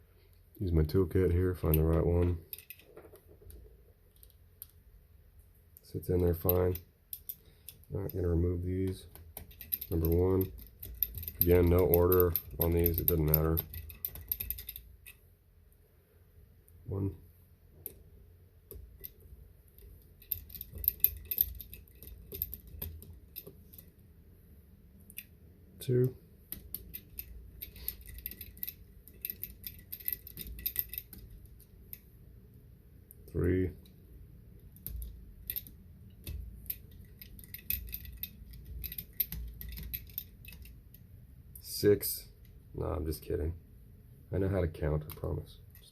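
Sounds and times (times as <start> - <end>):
screwdriver metallic ticks: 9.1 - 15.2.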